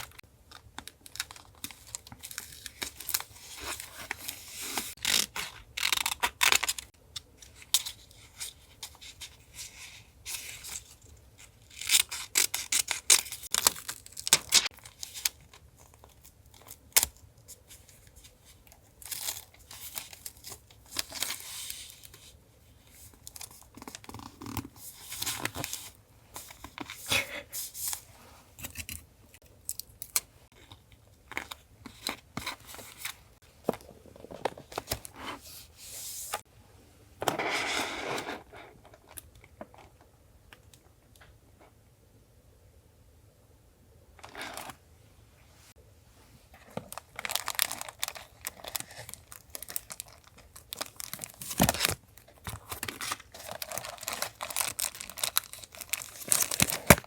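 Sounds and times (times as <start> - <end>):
paper crinkling: 46.6 - 57.0.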